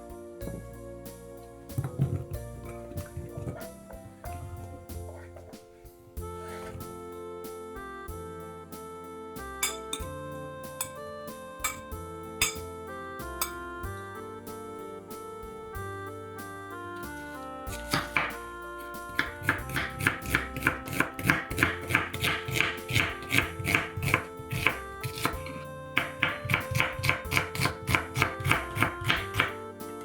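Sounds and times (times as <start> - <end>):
background music: 0.0 - 30.0
knife chopping on cutting board: 17.7 - 18.3, 19.1 - 29.5.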